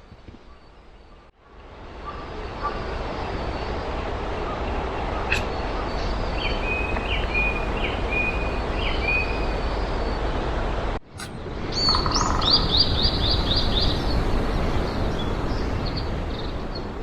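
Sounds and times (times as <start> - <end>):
outdoor background noise: 0.0 - 17.0
sharp click: 11.2 - 11.4.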